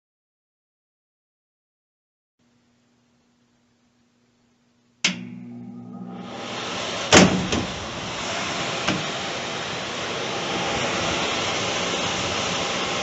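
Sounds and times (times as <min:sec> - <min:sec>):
furnace blower fan running: 0:02.8 - 0:13.0.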